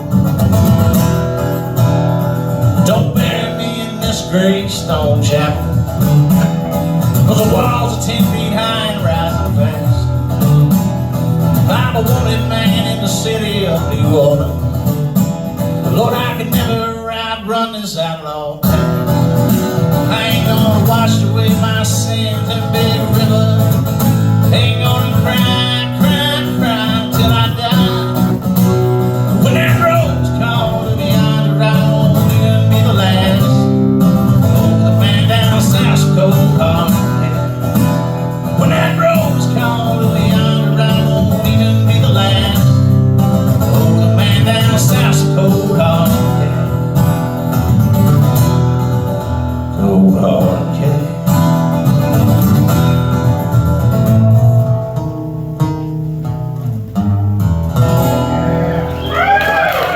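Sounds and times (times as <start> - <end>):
picked acoustic guitar: 0.0 - 59.9.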